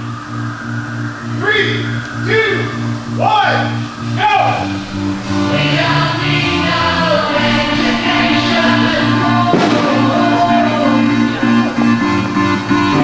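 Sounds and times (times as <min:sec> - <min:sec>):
song with bass and chords: 0:00.0 - 0:13.0
person singing: 0:04.6 - 0:13.0.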